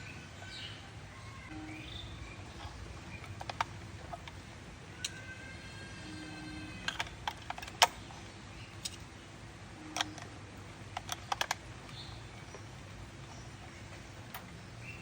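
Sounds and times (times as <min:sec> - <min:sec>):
plastic clicks and taps: 0:02.6 - 0:04.4
alarm clock ringing tone: 0:05.1 - 0:06.8.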